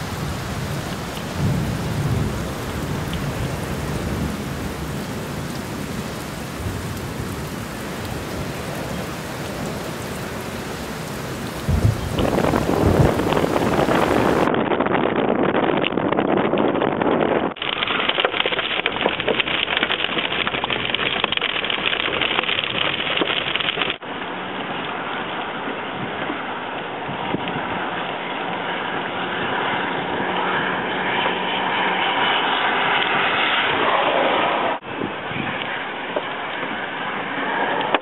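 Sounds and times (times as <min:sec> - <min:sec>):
wind buffeting microphone: 0:00.0 - 0:23.0, 0:24.6 - 0:38.0
vehicle moving: 0:07.2 - 0:14.6, 0:24.1 - 0:38.0.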